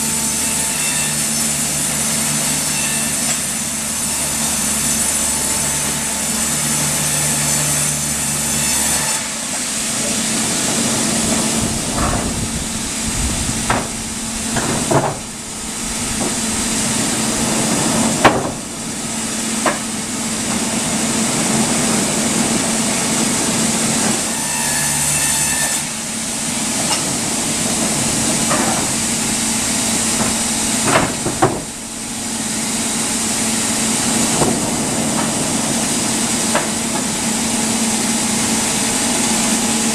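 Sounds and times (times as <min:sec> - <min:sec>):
sawmill machinery humming: 0:00.0 - 0:39.9
engine drone: 0:09.2 - 0:39.9
timber knocking: 0:13.2 - 0:17.1, 0:19.6 - 0:19.9, 0:30.1 - 0:31.8.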